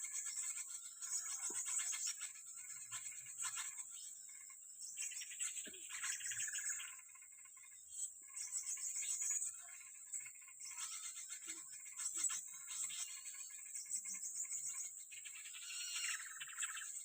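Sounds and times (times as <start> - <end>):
small birds chirping: 0.0 - 17.0
bird fast trill: 5.0 - 7.1, 8.3 - 17.0.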